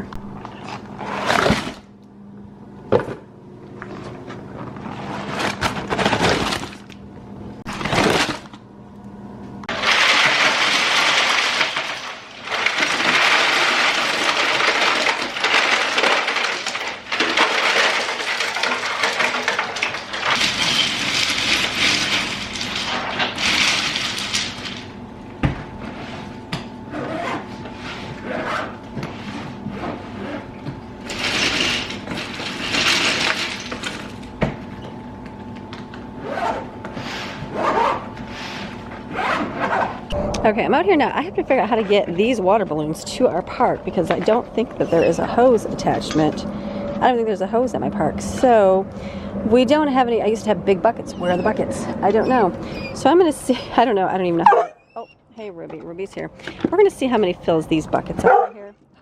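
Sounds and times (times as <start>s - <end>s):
ice cubes clattering into cooler: 5.1s - 6.9s, 7.7s - 8.6s, 9.7s - 25.0s, 31.0s - 34.4s.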